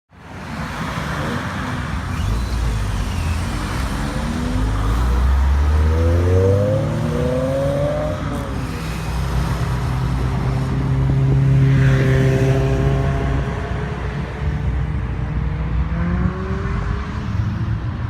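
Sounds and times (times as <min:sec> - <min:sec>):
car engines pulling away: 0:00.8 - 0:18.0
car engine revving: 0:01.8 - 0:15.2.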